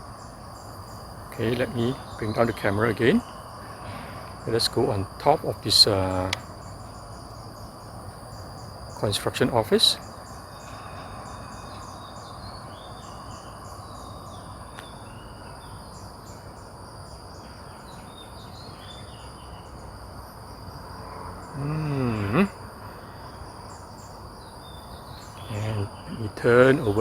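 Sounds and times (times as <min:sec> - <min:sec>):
insects chirring: 0:00.0 - 0:27.0
person humming: 0:21.5 - 0:22.6.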